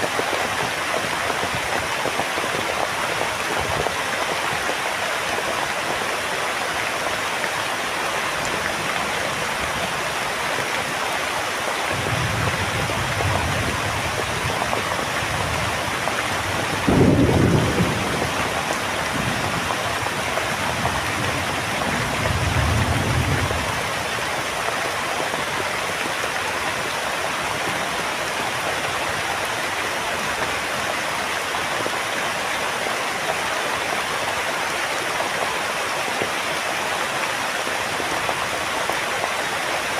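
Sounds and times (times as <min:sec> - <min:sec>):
heavy rain falling: 0:00.0 - 0:39.9
thunder rumbling: 0:11.9 - 0:19.7.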